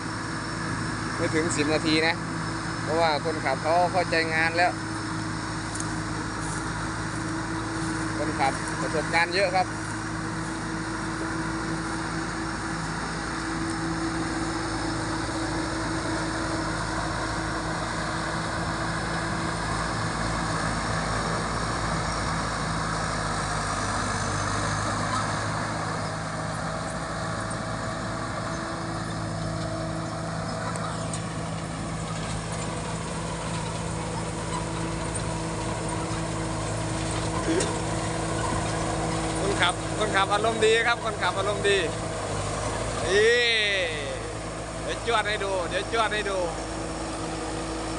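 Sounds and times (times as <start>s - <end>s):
combine harvester engine drone: 0.0s - 47.9s.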